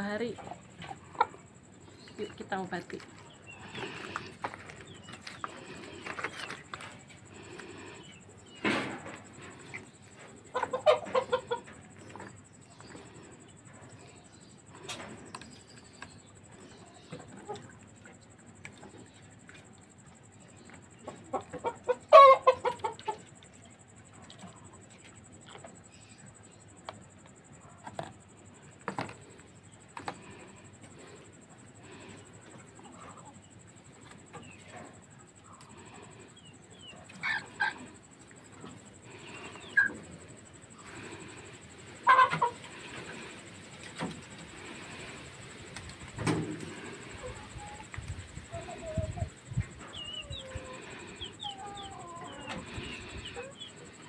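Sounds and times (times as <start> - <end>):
chicken clucking and squawking: 0.2 - 1.6, 3.5 - 12.4, 20.9 - 23.3, 36.8 - 40.2, 40.8 - 45.2, 46.5 - 54.0.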